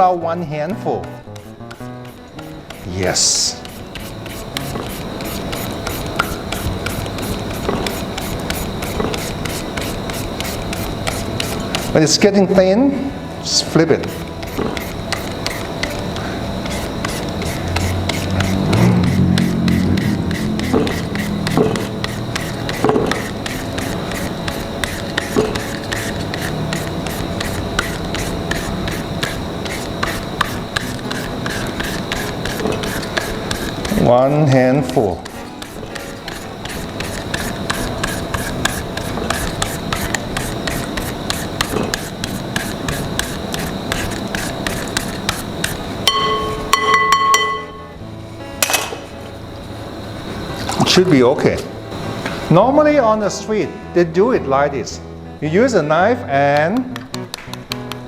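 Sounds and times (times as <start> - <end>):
papaya rasping on shredder: 1.0 - 46.8.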